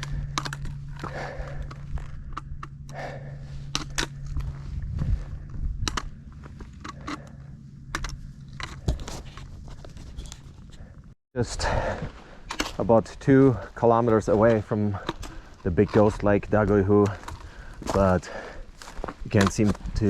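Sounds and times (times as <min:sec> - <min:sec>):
low steady hum: 0:00.0 - 0:20.0
twigs crunching and snapping: 0:12.5 - 0:20.0.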